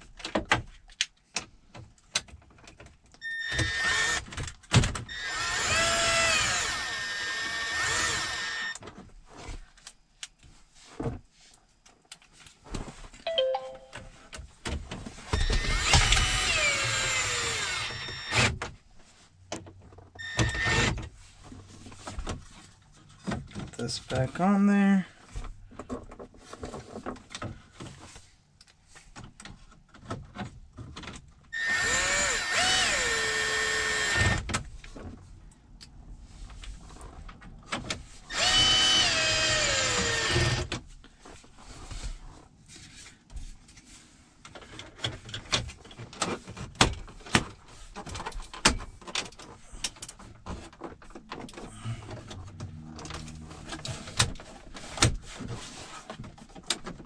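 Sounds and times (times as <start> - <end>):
power drill driving screws: 3.2 - 4.3, 5.0 - 8.8, 15.4 - 18.6, 20.2 - 21.0, 31.6 - 34.5, 38.3 - 40.7.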